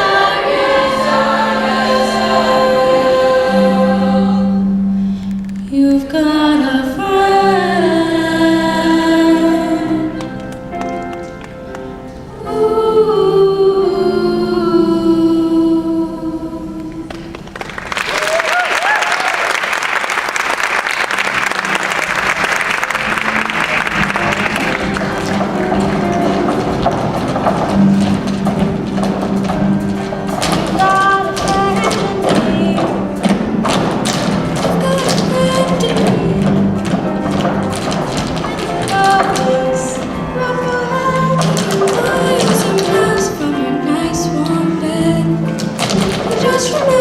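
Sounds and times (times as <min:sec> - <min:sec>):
choir singing held chords: 0:00.0 - 0:05.2, 0:06.2 - 0:10.5, 0:12.0 - 0:17.2
audience applauding: 0:17.1 - 0:27.4.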